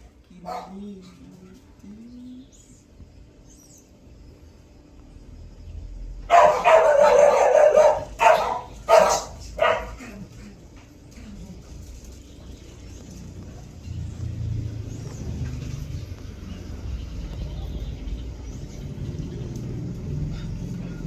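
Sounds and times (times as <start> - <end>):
dog barking: 0.4 - 0.9, 6.3 - 10.3.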